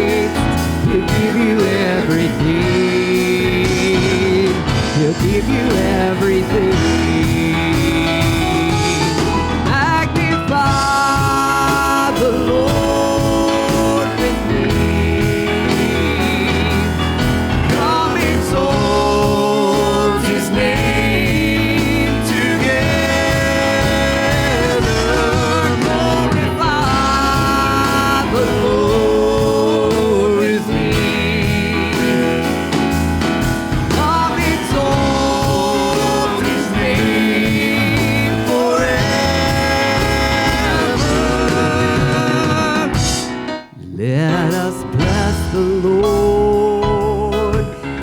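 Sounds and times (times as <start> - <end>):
worship band instrumental: 0.0 - 48.0.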